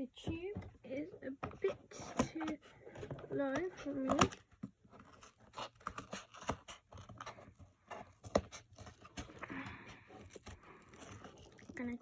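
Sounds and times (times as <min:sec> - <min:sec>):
cardboard rustle: 0:00.1 - 0:12.0
cardboard box clicks and scrapes: 0:01.5 - 0:09.5.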